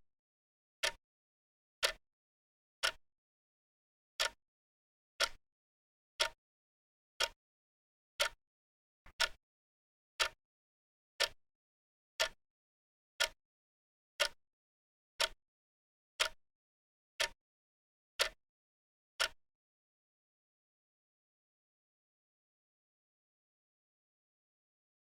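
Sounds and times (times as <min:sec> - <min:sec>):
clock ticking: 0:05.2 - 0:05.4, 0:09.1 - 0:09.4.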